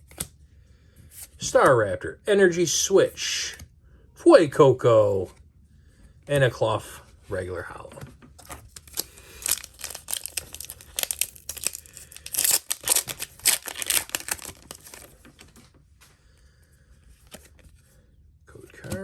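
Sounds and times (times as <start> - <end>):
foil wrapper tearing and crinkling: 8.7 - 15.2.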